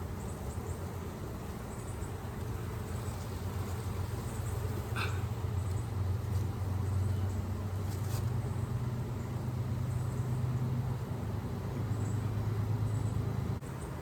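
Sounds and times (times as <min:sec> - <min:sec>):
bees buzzing: 0:00.0 - 0:07.4.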